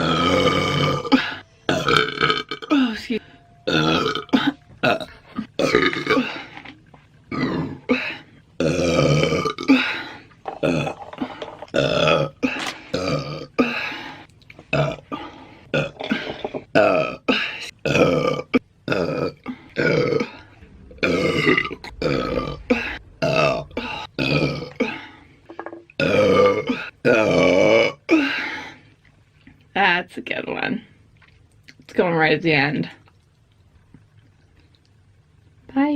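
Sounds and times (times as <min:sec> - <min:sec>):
woman burping: 0:00.0 - 0:03.1, 0:03.7 - 0:06.5, 0:08.6 - 0:13.9, 0:14.7 - 0:20.5.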